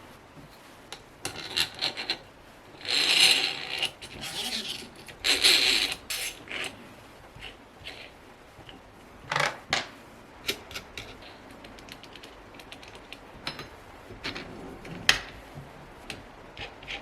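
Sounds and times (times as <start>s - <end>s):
small hard parts clicking and knocking: 8.7s - 15.4s.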